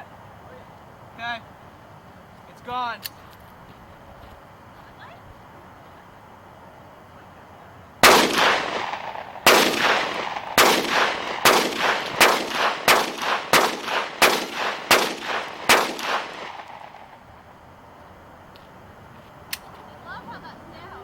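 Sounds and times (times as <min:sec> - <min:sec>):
echoing gunshots: 0:08.0 - 0:17.3.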